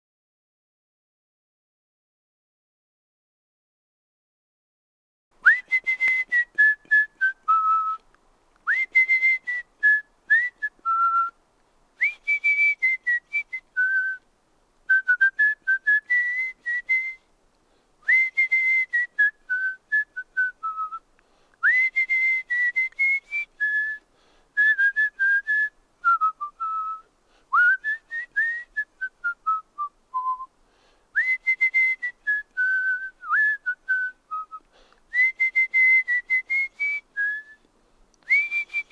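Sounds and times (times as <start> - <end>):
person whistling a melody: 5.4 - 8.0, 8.7 - 11.4, 12.0 - 14.2, 14.9 - 17.2, 18.0 - 21.0, 21.6 - 24.0, 24.6 - 30.5, 31.2 - 38.9.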